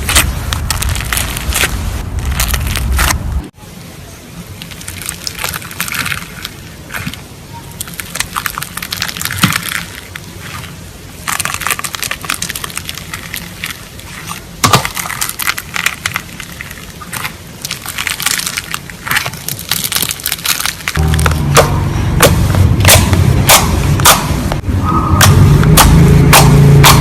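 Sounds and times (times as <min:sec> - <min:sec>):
slime crackling and popping: 0:00.0 - 0:03.4, 0:04.6 - 0:21.6.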